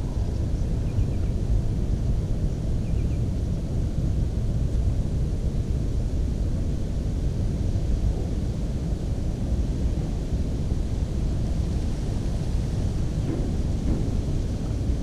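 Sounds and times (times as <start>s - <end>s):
wind buffeting microphone: 0.0s - 15.0s.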